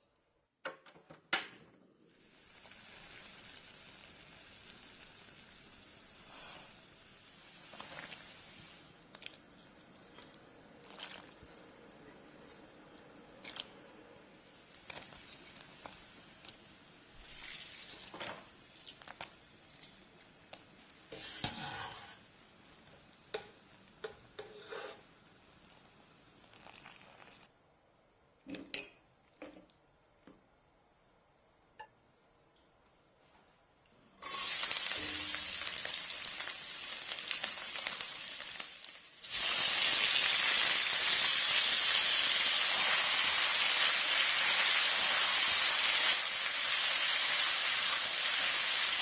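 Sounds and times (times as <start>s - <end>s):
faint steady hiss: 0.0s - 49.0s
utensils and dishes clinking: 11.4s - 12.8s.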